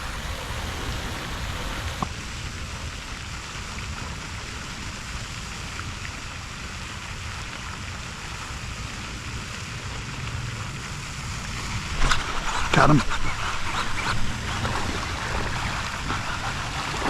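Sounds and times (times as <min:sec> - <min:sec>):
even hiss: 0:00.0 - 0:02.1
wind rumbling on microphone: 0:00.0 - 0:03.1, 0:03.9 - 0:17.0.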